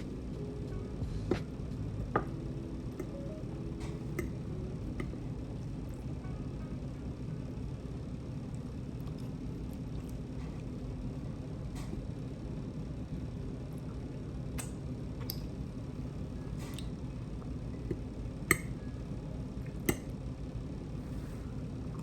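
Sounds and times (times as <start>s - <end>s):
steady low hum: 0.0s - 22.0s
cutlery clicking against a plate: 18.5s - 18.7s.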